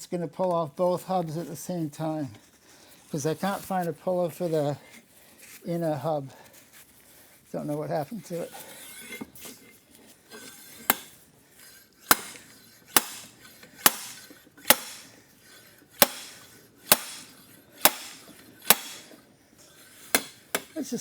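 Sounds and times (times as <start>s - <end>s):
hammer striking metal tool: 10.4s - 11.2s, 12.0s - 15.1s, 16.0s - 19.2s, 20.0s - 20.8s.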